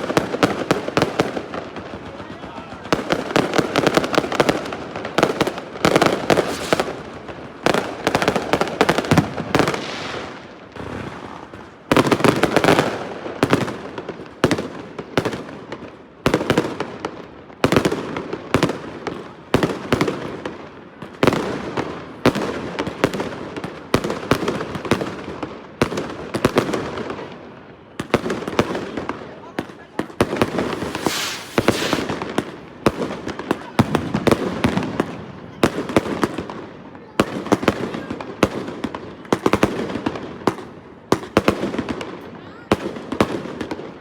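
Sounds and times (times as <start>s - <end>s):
fireworks crackling: 2.9s - 12.5s, 30.1s - 33.4s
fireworks bangs: 3.0s - 12.8s, 30.2s - 33.2s.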